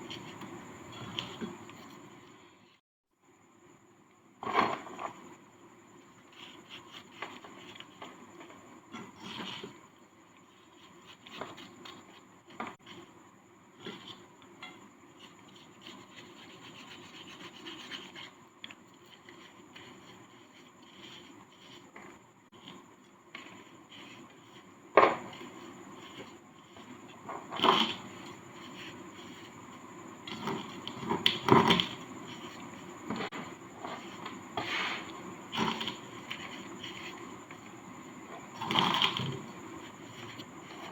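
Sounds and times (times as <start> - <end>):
sand being scraped and crumbled: 25.4 - 38.9.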